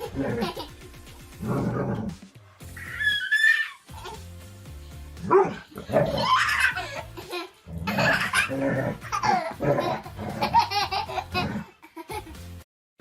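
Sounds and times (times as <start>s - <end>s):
high-pitched laughter: 5.9s - 12.4s.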